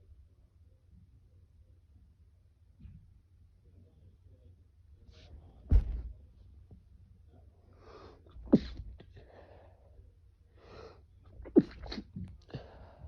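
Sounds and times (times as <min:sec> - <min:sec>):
man stifled sneezes: 0:08.4 - 0:09.2, 0:11.4 - 0:12.3.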